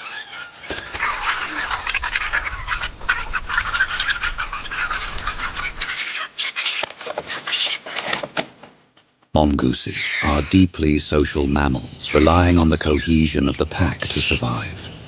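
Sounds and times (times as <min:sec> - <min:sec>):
mongooses chittering and squealing: 0:00.0 - 0:07.9, 0:09.7 - 0:10.6, 0:11.9 - 0:14.4
low rumble: 0:00.8 - 0:06.0.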